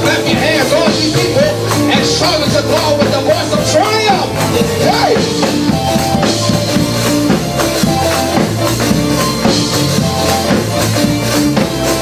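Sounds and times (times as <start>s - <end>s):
drum kit beat: 0.0s - 12.0s
gospel band playing: 0.0s - 12.0s
low bass notes: 0.0s - 12.0s.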